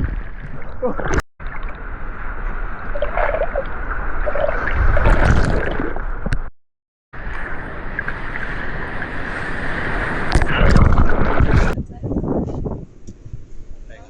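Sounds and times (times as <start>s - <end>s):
sea water rushing and gurgling: 0.0s - 6.5s, 7.2s - 11.8s.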